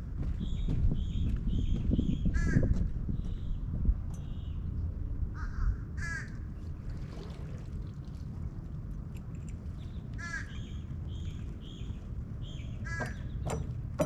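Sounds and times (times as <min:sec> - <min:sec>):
wind rumble on microphone: 0:00.0 - 0:14.0
crow cawing: 0:05.4 - 0:06.3, 0:10.2 - 0:10.6, 0:12.8 - 0:13.2.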